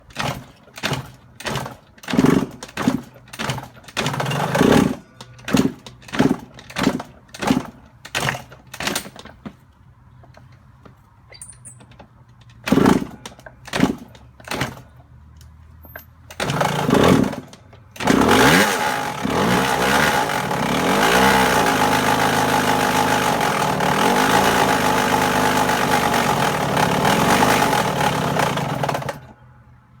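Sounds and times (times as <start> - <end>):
engine being kick-started: 0.0 - 9.4, 11.4 - 15.1, 15.9 - 29.4
two-stroke engine revving: 0.1 - 8.4, 12.7 - 14.8, 16.4 - 29.3.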